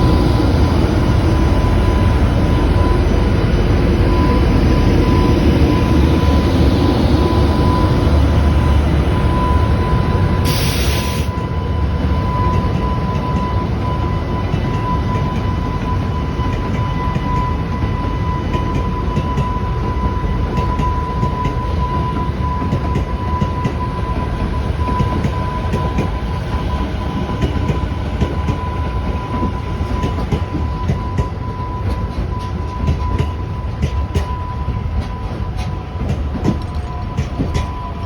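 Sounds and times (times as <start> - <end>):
train rumbling past: 0.0 - 38.0.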